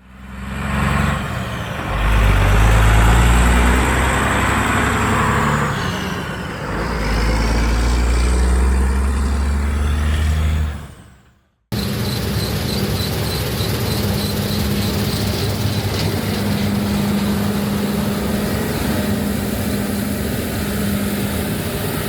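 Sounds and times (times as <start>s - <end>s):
large diesel engine running hard: 0.0s - 22.0s
rushing machine noise: 11.7s - 22.0s.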